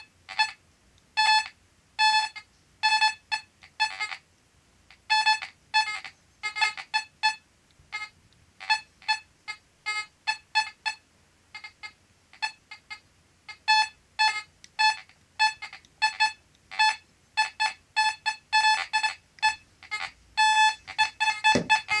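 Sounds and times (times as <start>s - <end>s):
metal detector beeping: 1.2s - 4.0s, 5.1s - 7.4s, 13.6s - 22.0s.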